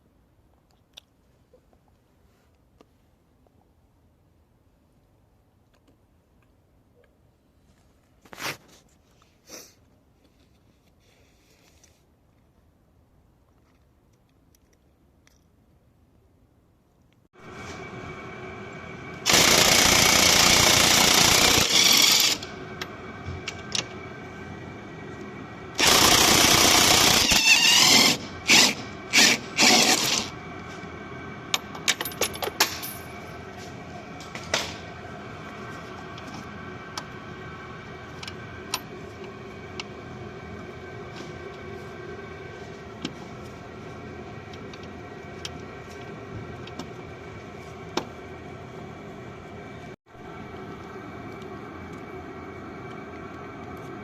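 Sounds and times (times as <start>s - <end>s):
starter motor cranking engine: 19.2s - 24.0s, 25.7s - 30.4s.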